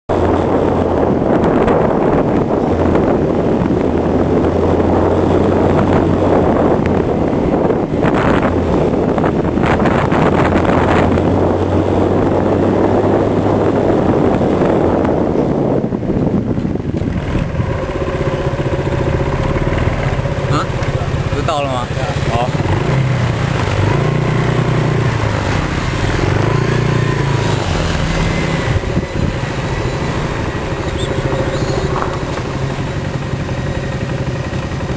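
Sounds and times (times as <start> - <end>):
low engine hum: 0.1 - 34.9
road and wind noise: 0.1 - 34.9
wind buffeting microphone: 0.1 - 34.9.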